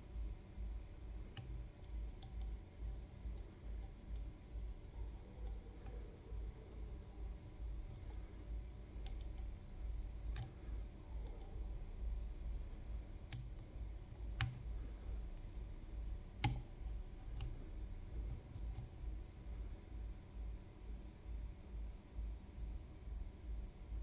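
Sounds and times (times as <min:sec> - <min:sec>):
lock pick clicking in lock: 0:13.3 - 0:13.7, 0:16.4 - 0:17.6.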